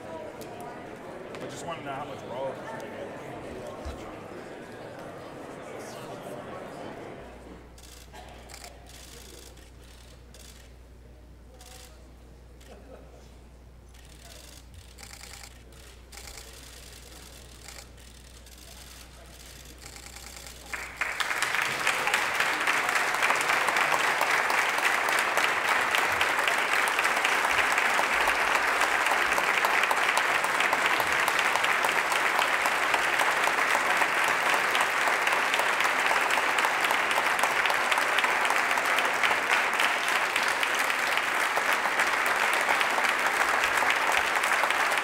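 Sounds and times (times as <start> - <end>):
large audience applauding: 19.7 - 45.0.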